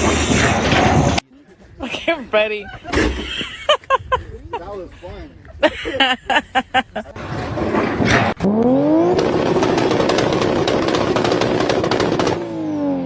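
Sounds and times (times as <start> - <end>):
engine revving with rapid clicks: 7.7 - 13.0.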